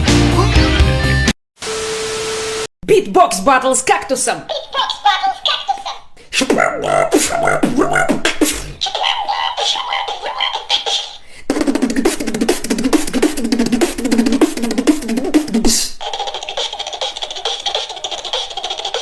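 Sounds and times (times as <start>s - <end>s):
rapid-fire mouth clicks: 5.8s - 19.0s
beatboxing drum hits: 6.4s - 8.8s, 11.5s - 19.0s.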